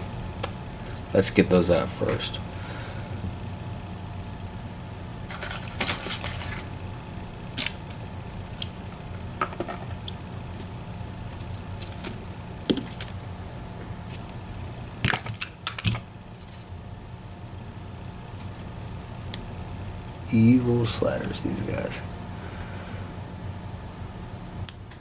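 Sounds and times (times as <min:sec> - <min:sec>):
small metal parts clicking: 0:07.6 - 0:08.8, 0:15.0 - 0:16.7.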